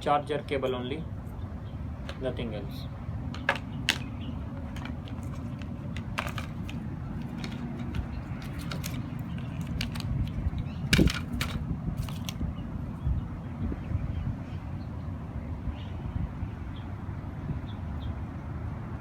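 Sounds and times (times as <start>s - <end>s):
light clicks and rustles: 3.3s - 12.4s.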